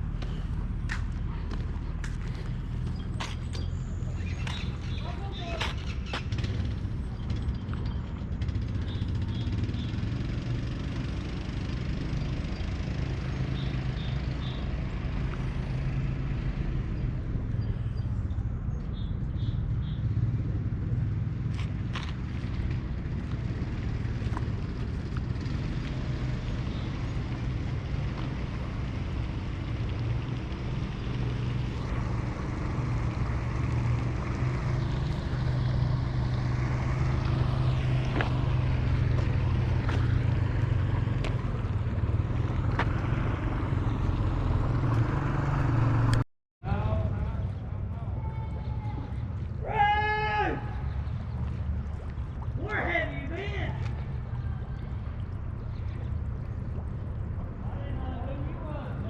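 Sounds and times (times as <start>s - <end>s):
car engine hum: 0.0s - 59.0s
tyre and road noise: 0.0s - 59.0s.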